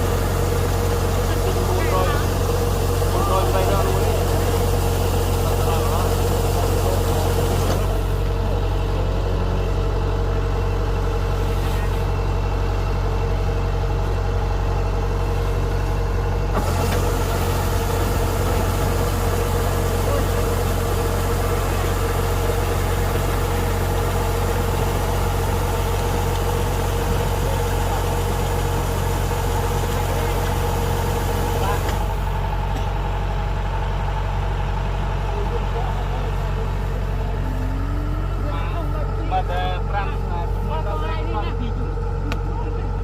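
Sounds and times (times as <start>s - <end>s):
diesel engine droning with whine: 0.0s - 43.0s.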